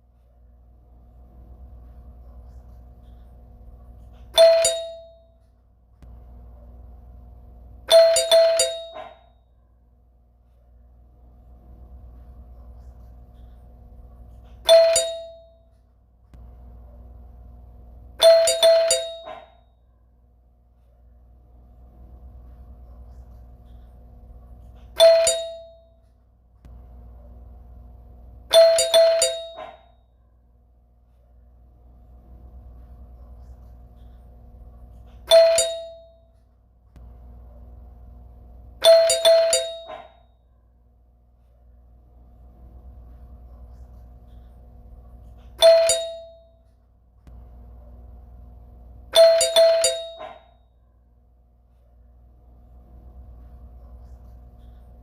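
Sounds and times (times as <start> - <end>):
faint steady hum: 0.0 - 55.0
doorbell ringing: 4.3 - 5.4, 7.9 - 9.3, 14.6 - 15.7, 18.2 - 19.6, 25.0 - 26.0, 28.5 - 29.9, 35.2 - 36.4, 38.8 - 40.3, 45.6 - 46.6, 49.1 - 50.6.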